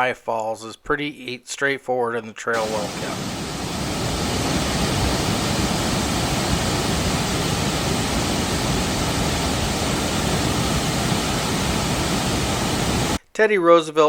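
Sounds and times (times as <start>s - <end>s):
waterfall rushing: 2.6s - 13.2s.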